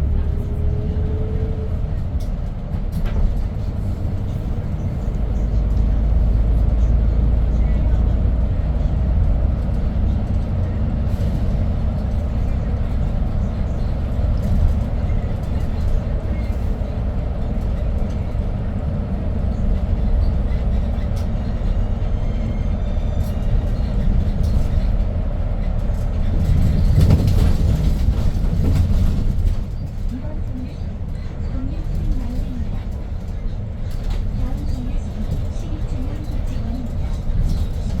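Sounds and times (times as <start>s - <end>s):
bus engine low rumble: 0.0s - 38.0s.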